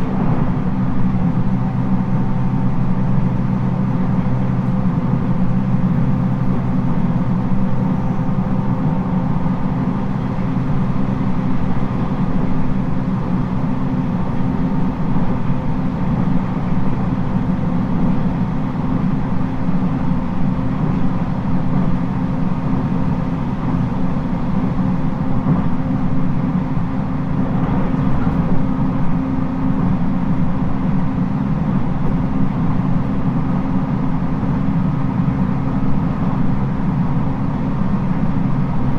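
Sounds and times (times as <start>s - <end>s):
jet-like whine: 0.0s - 3.2s
train wheels rumbling on rail: 0.0s - 38.9s.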